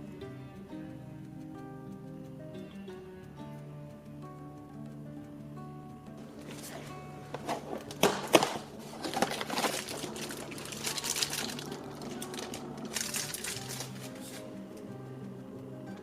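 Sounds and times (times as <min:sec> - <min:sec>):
soft background music: 0:00.0 - 0:16.0
packaging crinkling: 0:06.3 - 0:14.5.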